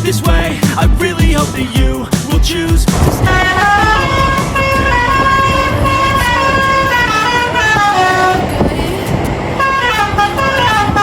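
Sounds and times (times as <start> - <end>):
bus engine: 0.0 - 11.0
road noise: 0.0 - 11.0
bus horn playing a tune: 3.0 - 11.0.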